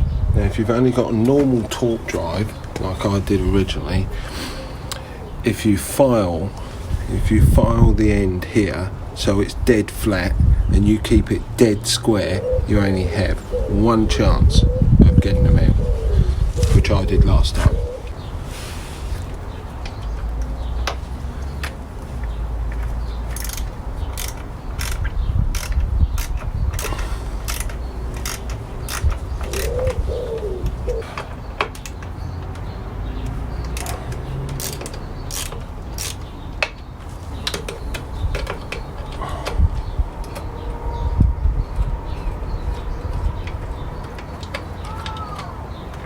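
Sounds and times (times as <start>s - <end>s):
ratchet clicking: 23.3s - 29.7s, 33.6s - 36.7s
bird call: 29.0s - 31.3s.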